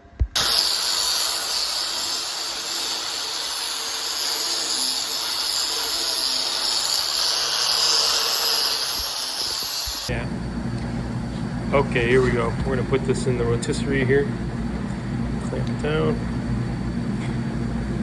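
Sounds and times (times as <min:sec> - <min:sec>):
grinder grinding steel: 0:00.4 - 0:10.1.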